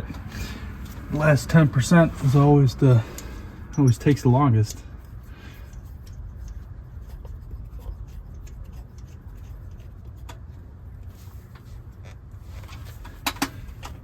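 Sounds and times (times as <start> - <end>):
steady low rumble: 0.0 - 14.0
hands clicking and rubbing parts: 3.1 - 14.0.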